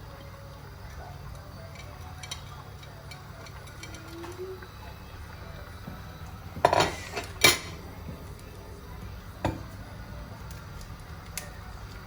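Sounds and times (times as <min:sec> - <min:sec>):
low steady hum: 0:00.0 - 0:12.0
cookware clanking: 0:06.6 - 0:07.8.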